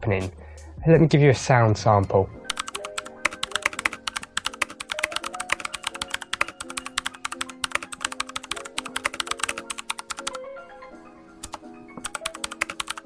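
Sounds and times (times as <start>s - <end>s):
background music with held notes: 0.0s - 13.0s
mechanical keyboard typing: 1.9s - 10.4s, 11.4s - 13.0s.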